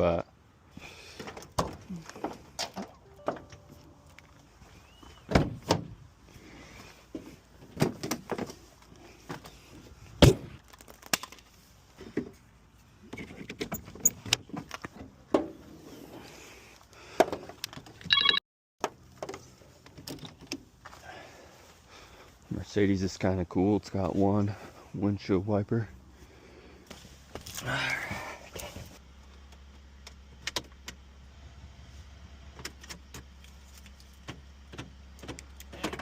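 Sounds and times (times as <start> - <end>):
short electronic beep: 3.0 - 4.2, 18.1 - 18.4.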